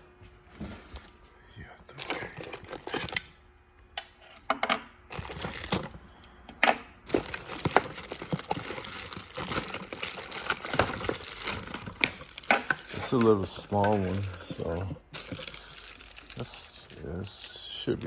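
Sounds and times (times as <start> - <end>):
packaging crinkling and crunching: 1.9 - 3.2, 5.1 - 6.0, 7.1 - 18.0
packaging rustling: 1.9 - 3.2, 5.1 - 6.0, 7.1 - 18.0.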